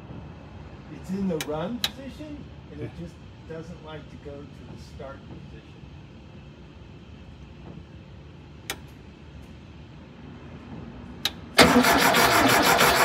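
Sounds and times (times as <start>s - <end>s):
engine cranking on starter: 11.5s - 13.0s.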